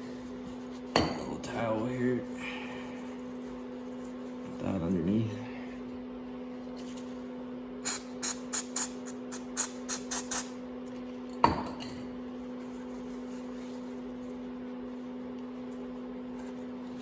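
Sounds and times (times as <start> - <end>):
steady low hum: 0.0 - 17.0
spray cleaner squirts: 7.8 - 10.5.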